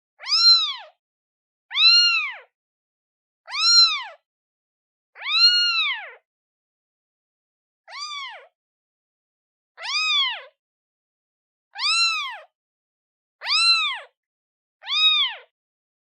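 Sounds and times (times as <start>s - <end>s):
newborn kitten meowing: 0.2s - 1.0s, 1.7s - 2.6s, 3.4s - 4.3s, 5.1s - 6.3s, 7.9s - 8.6s, 9.8s - 10.6s, 11.8s - 12.6s, 13.4s - 14.2s, 14.8s - 15.6s.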